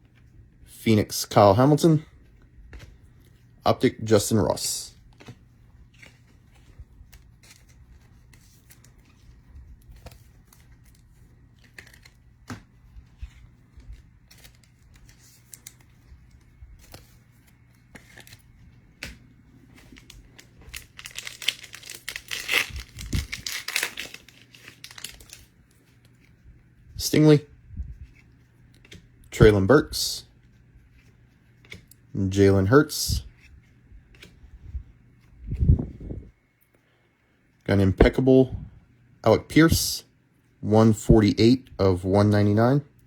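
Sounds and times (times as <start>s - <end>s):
cards clicking and tapping: 2.3s - 3.4s, 5.1s - 25.4s, 31.6s - 32.0s
wrappers tearing and crinkling: 19.8s - 25.6s.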